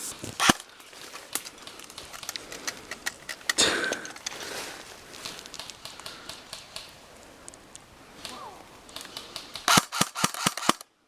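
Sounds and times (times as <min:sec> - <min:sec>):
airsoft gunfire cracks: 0:09.6 - 0:10.8.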